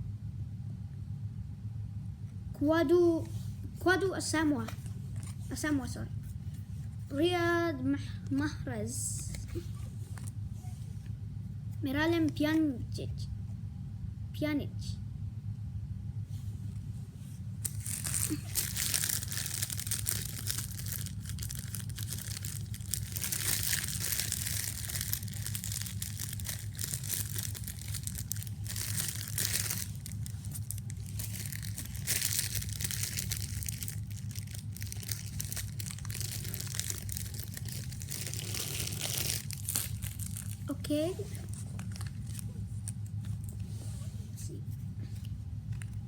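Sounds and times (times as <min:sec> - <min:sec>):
steady low hum: 0:00.0 - 0:46.0
foil wrappers crinkling: 0:17.6 - 0:43.6.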